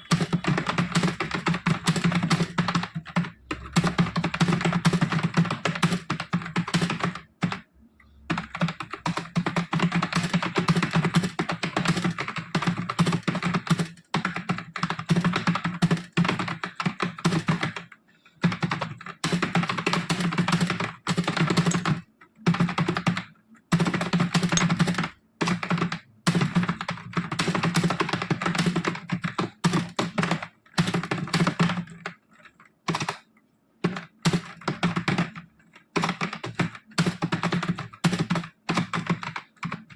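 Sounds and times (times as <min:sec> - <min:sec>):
keyboard key clicks: 0:23.8 - 0:25.7.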